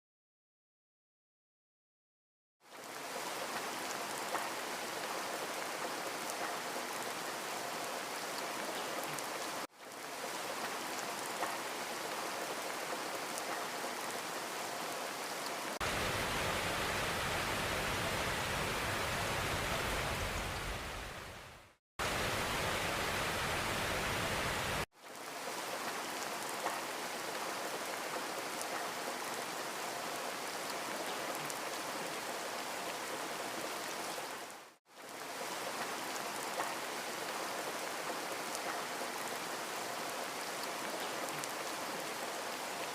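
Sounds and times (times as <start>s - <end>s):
waterfall rushing: 15.8s - 24.9s.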